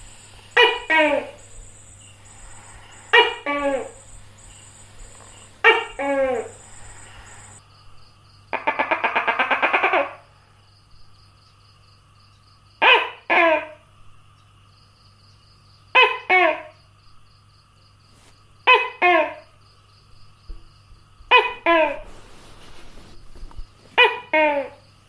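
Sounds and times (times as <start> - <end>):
gecko calling: 0.0 - 7.6.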